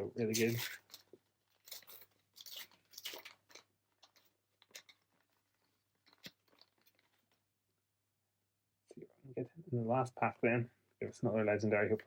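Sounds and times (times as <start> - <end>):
foil wrapper crinkling and tearing: 0.4 - 7.4.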